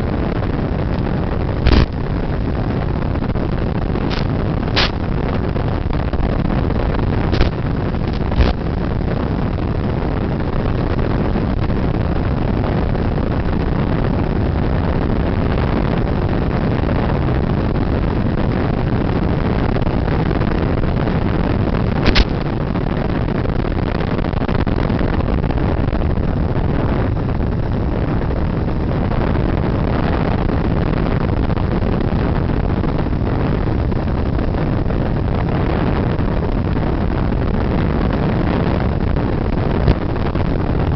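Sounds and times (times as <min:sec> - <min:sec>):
rushing airflow: 0:00.0 - 0:13.5, 0:15.5 - 0:40.9
sharp clicks: 0:04.1 - 0:05.0, 0:07.4 - 0:08.6, 0:22.0 - 0:22.4.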